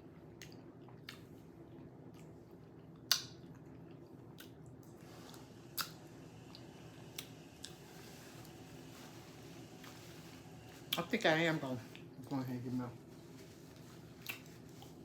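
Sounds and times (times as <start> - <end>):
low steady hum: 0.0 - 15.0
person chewing with mouth clicks: 0.2 - 7.8, 14.2 - 15.0.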